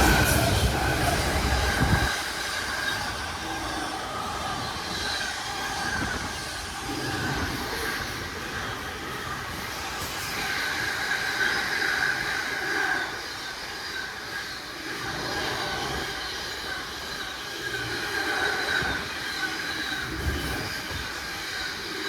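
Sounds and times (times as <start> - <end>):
freight train rumbling past: 0.0 - 14.0
high squeal of train wheels: 0.0 - 22.0.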